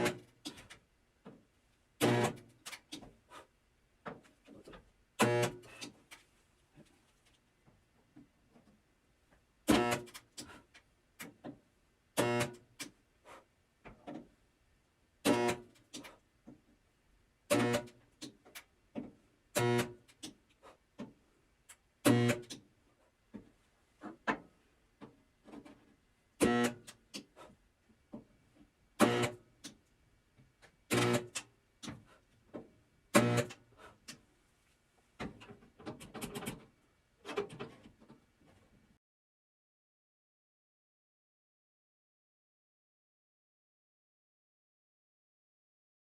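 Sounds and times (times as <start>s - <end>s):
spot welder buzzing: 2.0s - 2.4s, 9.7s - 10.1s, 12.2s - 12.6s, 15.3s - 15.7s, 17.5s - 17.9s, 19.6s - 20.0s, 22.0s - 22.6s, 26.4s - 26.9s, 29.0s - 29.4s, 30.9s - 31.4s, 33.1s - 33.6s.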